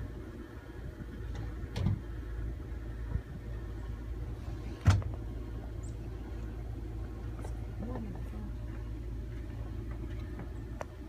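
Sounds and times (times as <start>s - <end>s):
vehicle engine idling: 0.0s - 11.0s.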